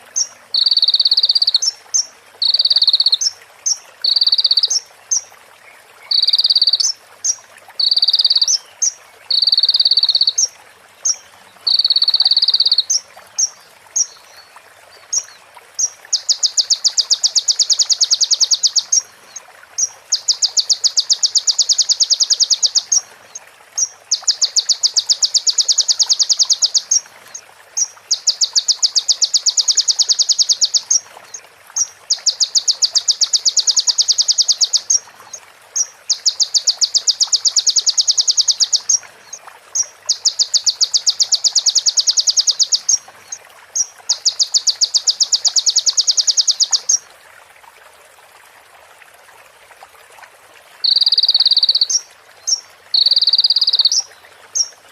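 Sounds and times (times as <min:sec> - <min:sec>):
faint steady hiss: 0:00.0 - 0:54.9
bird singing rattling trill: 0:16.1 - 0:19.0, 0:20.1 - 0:23.0, 0:32.1 - 0:35.0, 0:36.1 - 0:39.0, 0:40.1 - 0:43.0, 0:44.1 - 0:47.0, 0:53.0 - 0:54.0.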